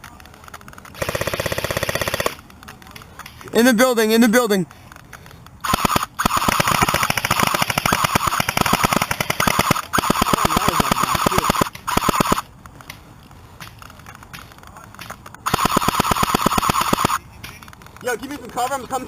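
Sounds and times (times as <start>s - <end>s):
airsoft gun firing rapid shots: 1.0s - 2.4s, 5.6s - 12.5s, 15.4s - 17.2s.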